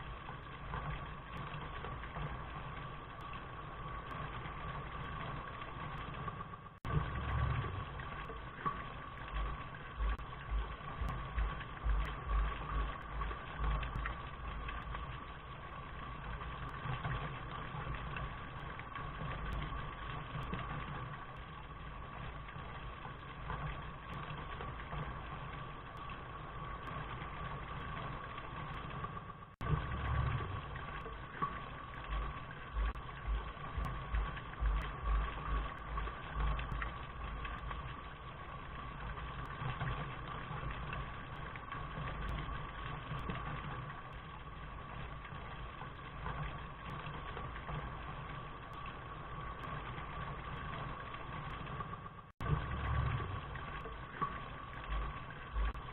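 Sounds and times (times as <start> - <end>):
steady rain: 0.0 - 55.9
low rumble: 6.8 - 17.2, 28.8 - 47.0, 51.6 - 55.9.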